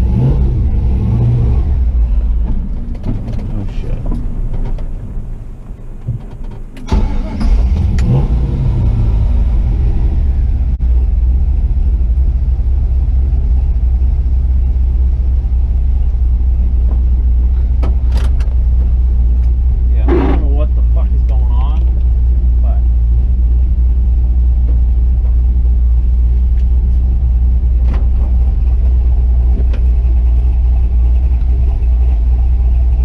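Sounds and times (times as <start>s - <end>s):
truck engine rumbling: 0.0s - 33.0s.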